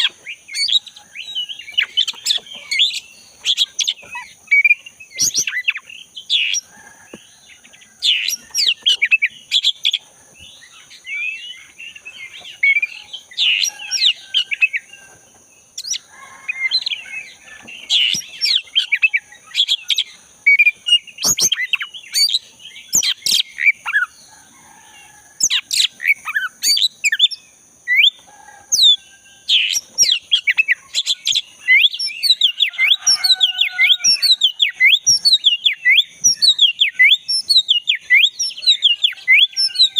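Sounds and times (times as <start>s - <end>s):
bird singing whistles and chirps: 0.0s - 6.7s, 15.8s - 24.1s, 25.4s - 39.9s.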